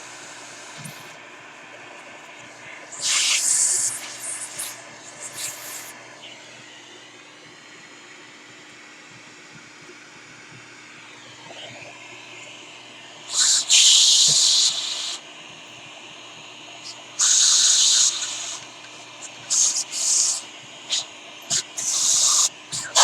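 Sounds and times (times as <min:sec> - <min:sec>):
compressed air hissing: 0:02.8 - 0:06.0, 0:13.3 - 0:15.2, 0:17.2 - 0:18.6, 0:19.2 - 0:23.0.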